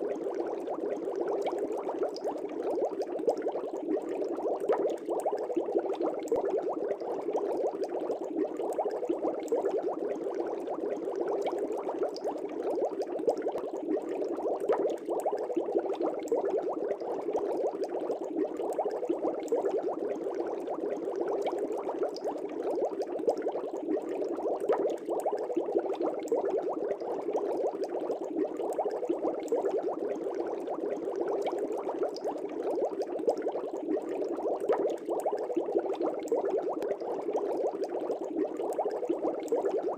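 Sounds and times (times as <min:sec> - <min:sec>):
aquarium bubbling: 0:00.0 - 0:39.9.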